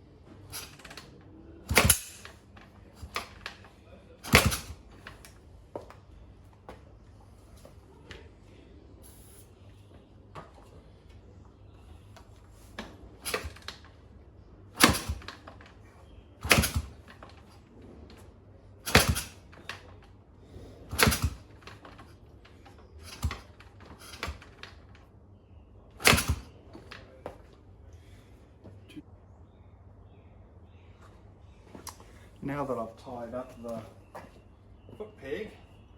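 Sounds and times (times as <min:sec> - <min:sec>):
engine kick-start clacks: 0:00.5 - 0:05.3, 0:13.2 - 0:14.0, 0:14.7 - 0:15.8, 0:16.4 - 0:17.6, 0:18.8 - 0:20.1, 0:20.9 - 0:25.0, 0:26.0 - 0:27.0.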